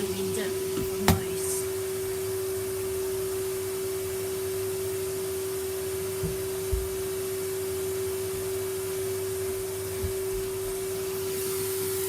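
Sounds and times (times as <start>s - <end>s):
vacuum cleaner running: 0.0s - 12.0s.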